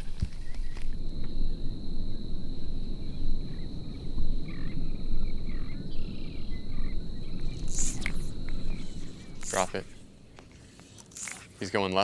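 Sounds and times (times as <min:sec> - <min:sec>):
low rumbling noise: 0:00.0 - 0:10.3
short chirps: 0:07.5 - 0:10.0
sharp click: 0:07.5 - 0:11.6.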